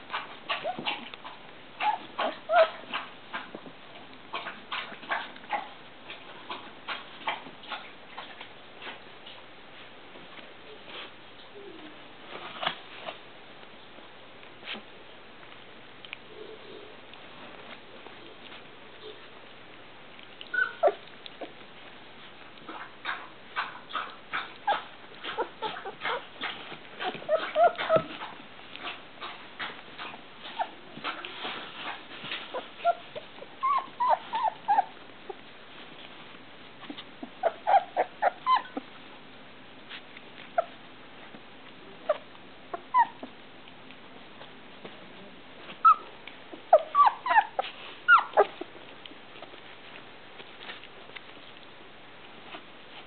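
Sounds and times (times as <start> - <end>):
puppies whimpering and squeaking: 0.0 - 3.5, 20.1 - 39.1, 39.9 - 43.9, 45.6 - 53.0
small clicks and scuffles: 47.3 - 53.0.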